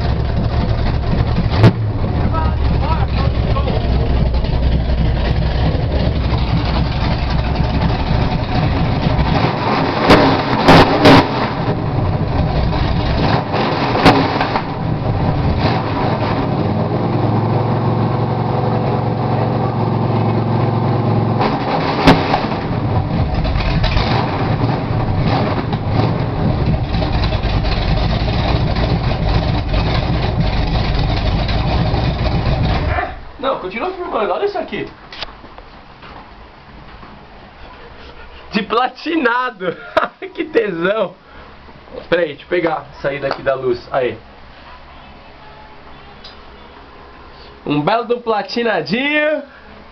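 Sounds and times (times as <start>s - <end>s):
engine running: 0.0s - 33.4s
sharp bangs: 0.3s - 16.5s, 21.4s - 27.4s.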